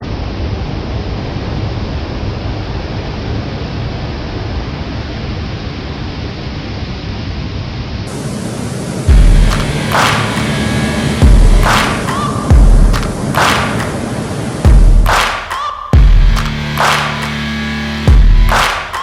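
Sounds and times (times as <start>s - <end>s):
ocean surf roaring: 8.1s - 15.2s.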